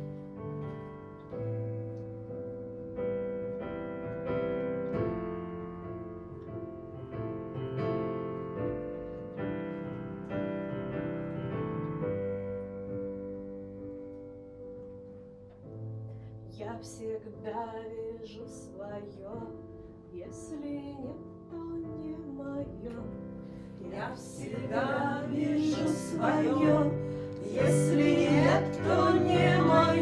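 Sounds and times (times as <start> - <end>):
piano playing slow chords: 0.0 - 16.7, 21.2 - 30.0.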